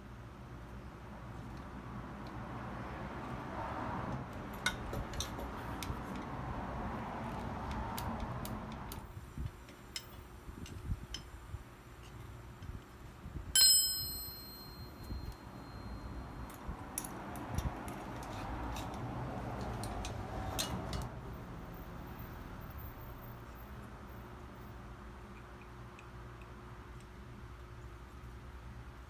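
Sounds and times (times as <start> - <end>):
small metallic clicks and taps: 4.1 - 6.4, 7.3 - 9.1, 16.5 - 21.2
ringing metal clink: 13.6 - 17.2.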